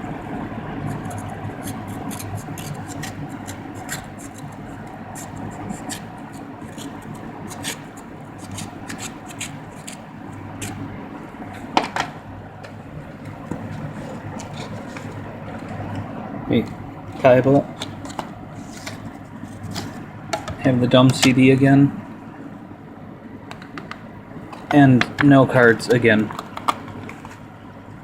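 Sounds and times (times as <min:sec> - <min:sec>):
steady low hum: 0:00.0 - 0:28.0
packaging crinkling and rustling: 0:13.2 - 0:20.0.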